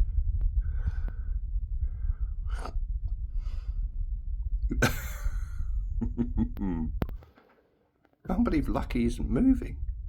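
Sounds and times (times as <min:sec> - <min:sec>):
person breathing close to microphone: 0:00.0 - 0:04.3
steady low rumble: 0:00.0 - 0:07.3, 0:08.3 - 0:10.0.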